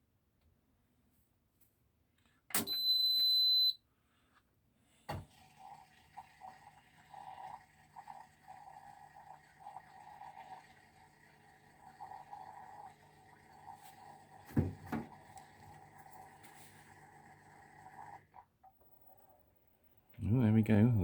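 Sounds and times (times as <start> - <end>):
washing machine high beep: 2.6 - 3.8
washing machine hum and mechanical noise: 5.1 - 19.4.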